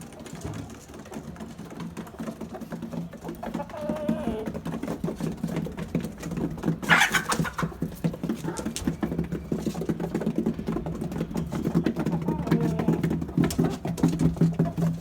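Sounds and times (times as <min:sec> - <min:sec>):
chickens pecking and scratching: 0:00.0 - 0:15.0
chicken squawk: 0:03.4 - 0:04.6, 0:06.8 - 0:08.9.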